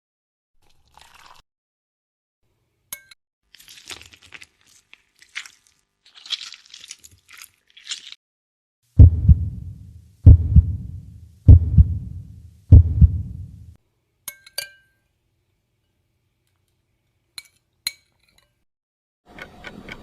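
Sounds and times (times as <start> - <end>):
scratchy crunching: 3.5 - 8.2
heavy deep thuds: 9.0 - 13.7.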